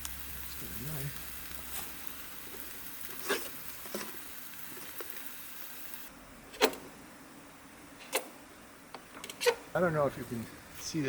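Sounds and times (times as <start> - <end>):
vegetables sizzling in a frying pan: 0.0 - 6.1.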